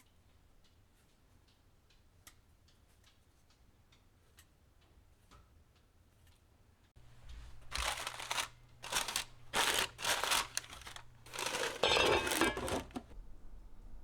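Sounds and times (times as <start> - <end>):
crinkling by hand: 7.0 - 13.2.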